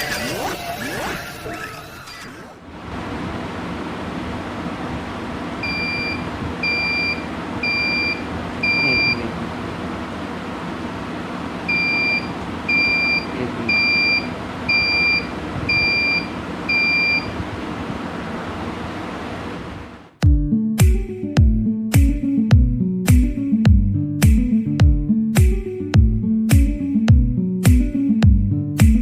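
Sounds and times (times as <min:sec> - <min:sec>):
alarm buzzer beeping: 0:05.6 - 0:09.3, 0:11.7 - 0:17.4.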